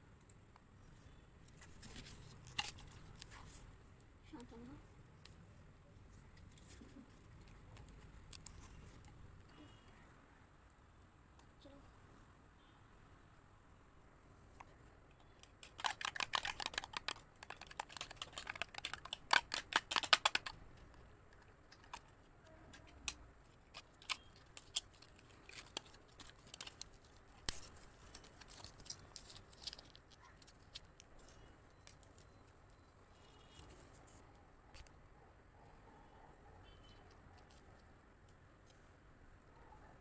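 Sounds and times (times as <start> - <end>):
packaging crackling: 15.4 - 22.2, 22.9 - 31.1.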